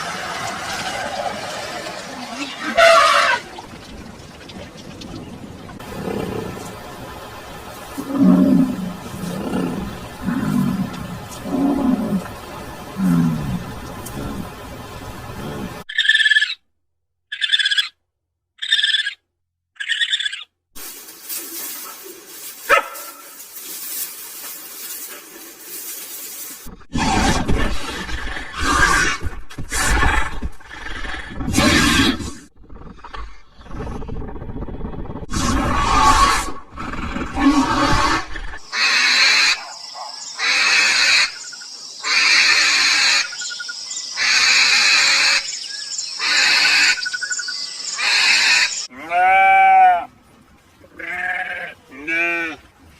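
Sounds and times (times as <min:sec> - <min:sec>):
rasping animal call: 0:02.6 - 0:03.5
background hiss: 0:20.8 - 0:26.7
dog barking: 0:22.7 - 0:23.3, 0:39.6 - 0:40.2.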